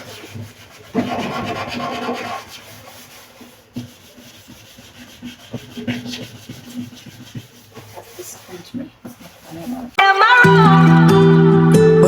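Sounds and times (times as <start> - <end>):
sponge scrubbing a surface: 0.0 - 10.0.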